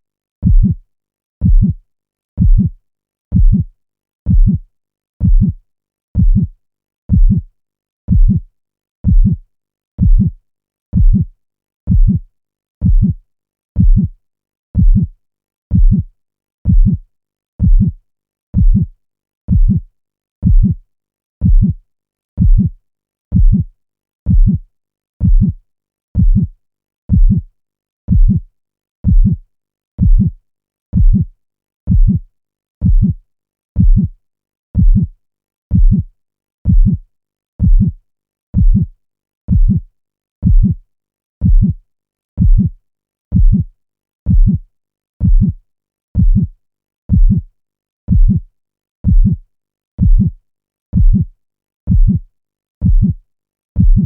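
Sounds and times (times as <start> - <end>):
heartbeat thumps: 0.4 - 0.8, 1.4 - 1.8, 2.4 - 2.7, 3.3 - 3.7, 4.3 - 4.6, 5.2 - 5.6, 6.2 - 6.5, 7.1 - 7.4, 8.1 - 8.4, 9.0 - 9.4, 10.0 - 10.3, 11.0 - 11.2, 11.9 - 12.2, 12.8 - 13.2, 13.8 - 14.1, 14.8 - 15.1, 15.7 - 16.0, 16.7 - 17.0, 17.6 - 18.0, 18.6 - 18.9, 19.5 - 19.8, 20.4 - 20.8, 21.4 - 21.8, 22.4 - 22.7, 23.3 - 23.6, 24.3 - 24.6, 25.2 - 25.6, 26.2 - 26.5, 27.1 - 27.4, 28.1 - 28.4, 29.0 - 29.4, 30.0 - 30.3, 31.0 - 31.2, 31.9 - 32.2, 32.8 - 33.2, 33.8 - 34.1, 34.8 - 35.1, 35.7 - 36.0, 36.7 - 37.0, 37.6 - 38.0, 38.6 - 38.9, 39.5 - 39.8, 40.4 - 40.8, 41.4 - 41.7, 42.4 - 42.7, 43.3 - 43.6, 44.3 - 44.6, 45.2 - 45.6, 46.2 - 46.5, 47.1 - 47.4, 48.1 - 48.4, 49.0 - 49.4, 50.0 - 50.3, 51.0 - 51.2, 51.9 - 52.2, 52.8 - 53.1, 53.8 - 54.0.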